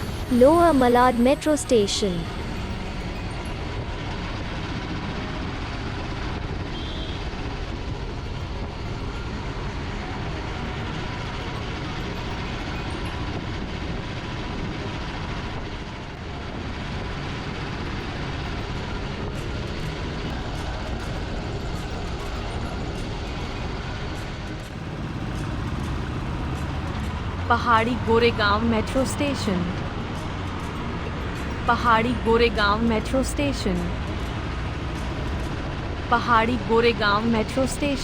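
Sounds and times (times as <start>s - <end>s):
train wheels rumbling: 24.0s - 38.0s.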